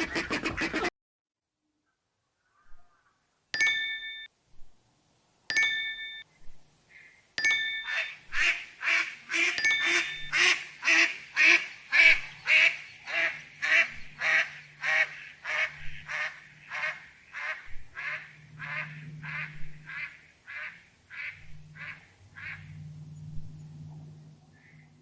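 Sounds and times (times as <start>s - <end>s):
duck quacking: 0.0s - 0.9s, 10.4s - 22.7s
bright ding: 3.6s - 4.3s, 5.5s - 6.2s, 7.4s - 8.2s, 9.6s - 10.4s.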